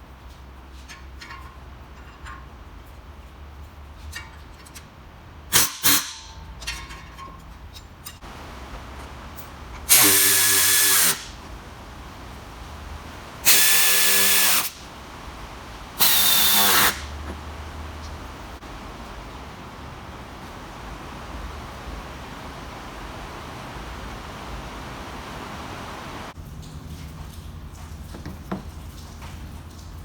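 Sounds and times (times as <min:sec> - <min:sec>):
metal clanks: 0:05.6 - 0:08.2
power drill motor whine: 0:16.0 - 0:17.0.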